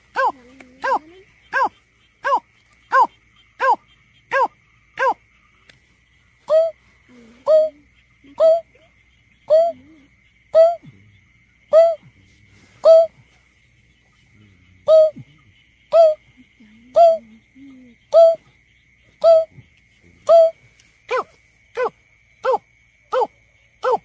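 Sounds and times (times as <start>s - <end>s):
bird hooting calls: 12.8s - 13.2s.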